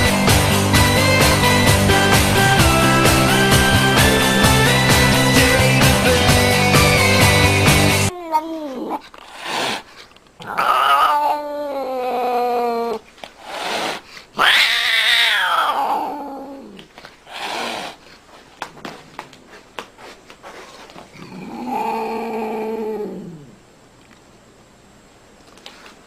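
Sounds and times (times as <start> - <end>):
cat yowling: 10.4 - 13.0, 14.4 - 16.8.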